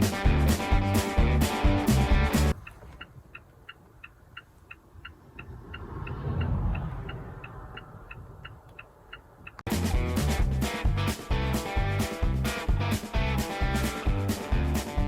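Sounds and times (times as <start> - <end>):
low vehicle rumble: 2.4 - 9.6.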